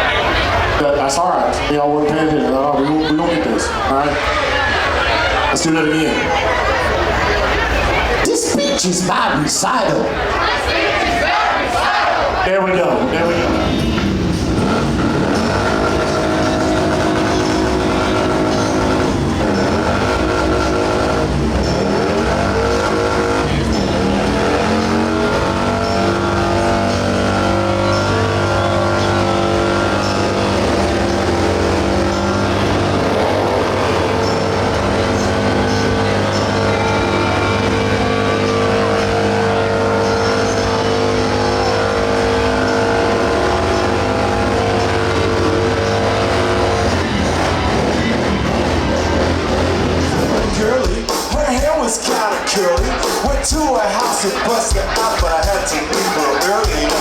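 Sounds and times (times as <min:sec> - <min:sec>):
motorcycle engine revving: 0:13.0 - 0:51.6.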